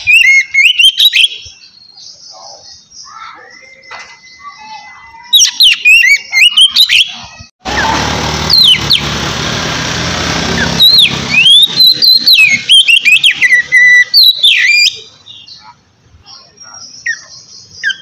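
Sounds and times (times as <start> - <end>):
bird whistling song: 0.0 - 7.3, 8.5 - 9.0, 10.6 - 15.7, 16.6 - 18.0
loud rushing noise: 7.6 - 13.8.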